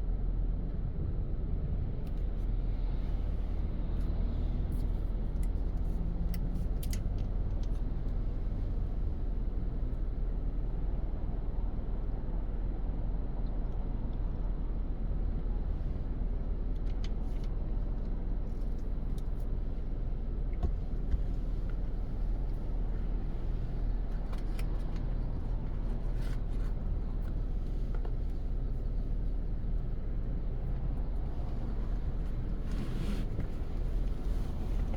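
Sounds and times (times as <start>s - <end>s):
car driving rumble: 13.3s - 34.9s.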